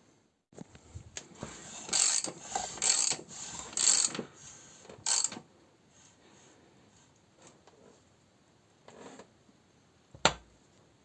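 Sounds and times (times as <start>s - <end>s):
rasping ratchet strokes: 1.4s - 5.4s
light ratchet clicks: 1.9s - 3.2s, 3.8s - 4.2s, 5.0s - 5.4s.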